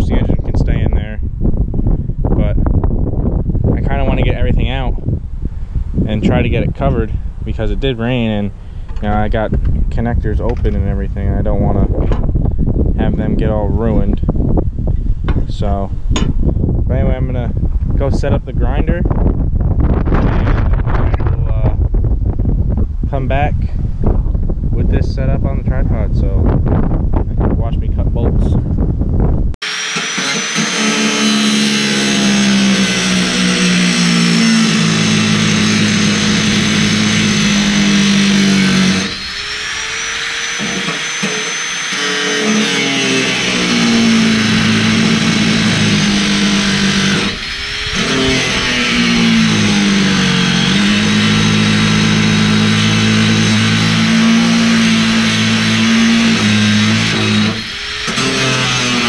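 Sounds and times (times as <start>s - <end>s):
angle grinder cutting bolts: 29.6s - 59.0s.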